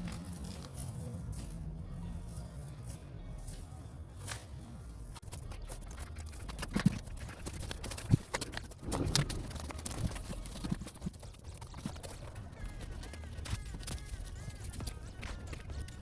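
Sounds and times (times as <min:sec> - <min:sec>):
steady low rumble: 0:00.0 - 0:15.2
irregular knocks and clatter: 0:05.8 - 0:14.0.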